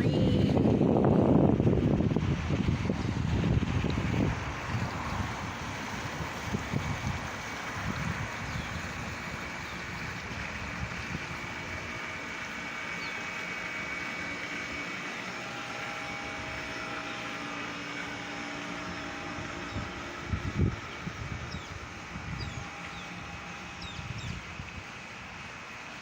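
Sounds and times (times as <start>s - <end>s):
wind rumbling on microphone: 0.0s - 12.2s, 19.0s - 25.5s
vehicle engine hum: 0.0s - 26.0s.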